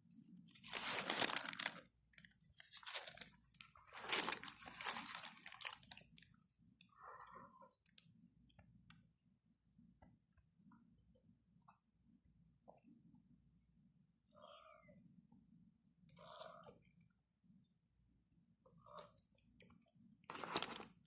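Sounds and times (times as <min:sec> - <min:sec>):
person crunching and chewing snack: 0:00.5 - 0:01.9, 0:02.6 - 0:06.1, 0:20.3 - 0:21.0.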